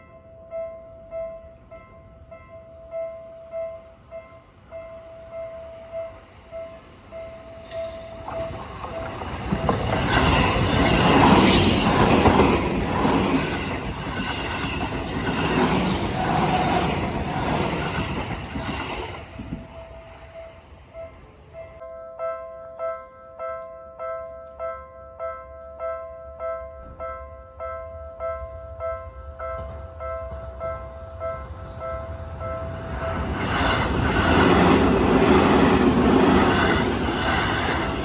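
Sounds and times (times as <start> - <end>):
electric train passing: 1.3 - 21.8, 26.8 - 38.0
wheels clattering over rail joints: 7.6 - 19.8.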